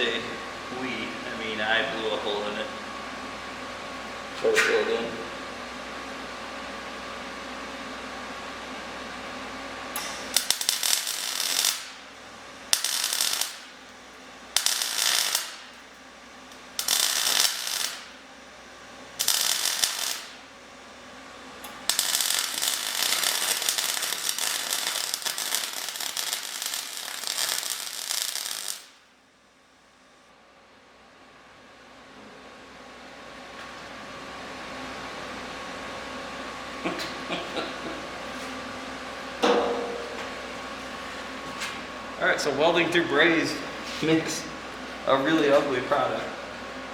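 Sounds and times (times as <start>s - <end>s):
welding arc crackling: 10.3s - 18.3s, 19.1s - 20.6s, 21.6s - 29.1s
steady hum: 34.5s - 46.9s.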